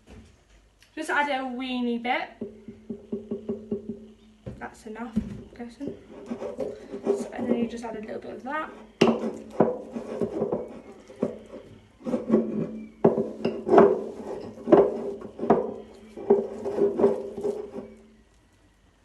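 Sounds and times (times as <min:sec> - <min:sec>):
steady low hum: 0:00.0 - 0:19.0
spoon stirring sticky slime: 0:06.0 - 0:18.2.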